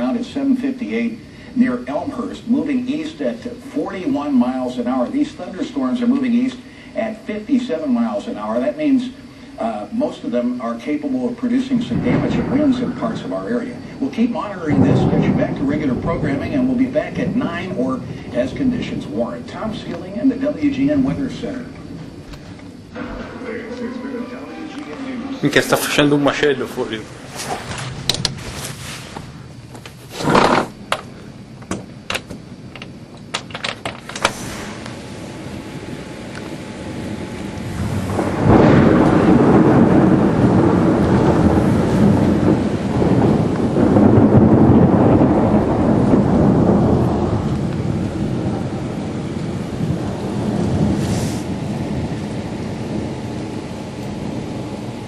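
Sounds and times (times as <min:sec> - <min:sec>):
steady rain hiss: 0:00.0 - 0:55.0
thunder rumbling: 0:00.0 - 0:55.0
loud thump: 0:22.9 - 0:24.1
short hiss: 0:27.0 - 0:29.4, 0:34.1 - 0:35.1, 0:51.0 - 0:51.5
handling knocks and clicks: 0:30.9 - 0:34.3.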